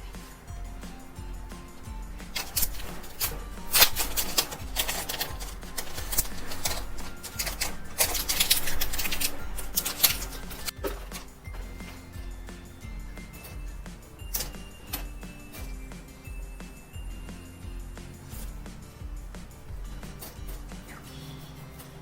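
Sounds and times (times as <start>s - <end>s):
paper and tape rustling: 2.3s - 11.3s.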